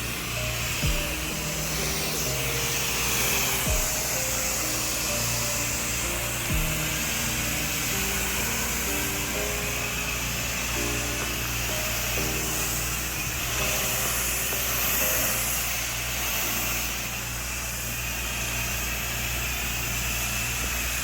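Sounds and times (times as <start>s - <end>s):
background music with bass drops: 0.0s - 14.2s
pressure washer spraying water: 0.0s - 21.0s.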